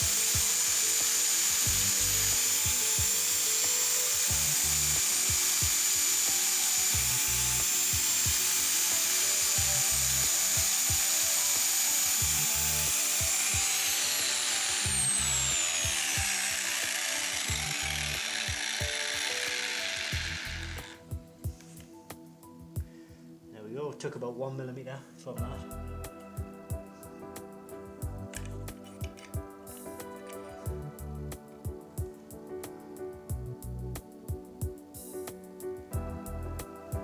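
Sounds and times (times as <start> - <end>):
grinder grinding metal: 0.0 - 21.0.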